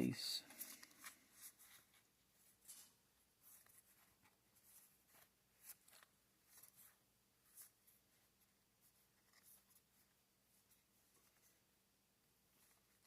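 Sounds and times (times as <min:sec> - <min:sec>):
trading cards rustling and flicking: 0:00.4 - 0:08.0.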